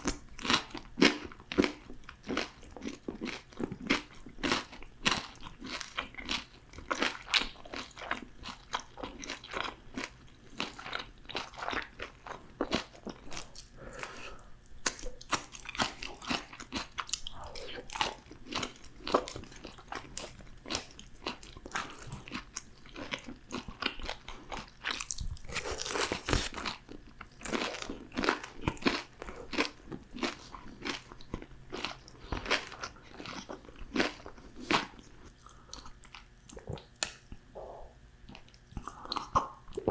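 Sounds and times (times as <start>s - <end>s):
crunching crispy fried food: 17.9s - 36.4s.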